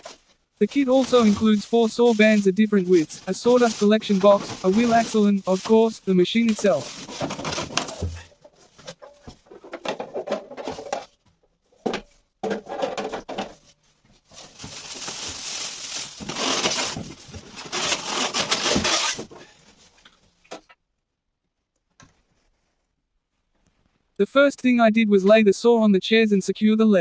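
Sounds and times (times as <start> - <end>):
packaging rustling and scraping: 0.0 - 11.2, 12.5 - 20.0
knocks and clatter of parts: 6.9 - 13.7.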